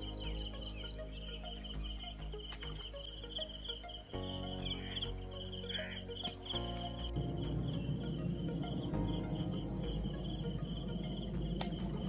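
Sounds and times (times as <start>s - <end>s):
crickets chirping: 0.0s - 12.0s
low rumble: 6.6s - 12.0s.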